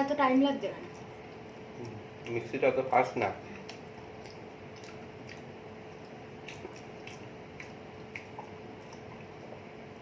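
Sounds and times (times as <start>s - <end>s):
faint steady hum: 0.0s - 10.0s
people chewing food: 0.0s - 10.0s.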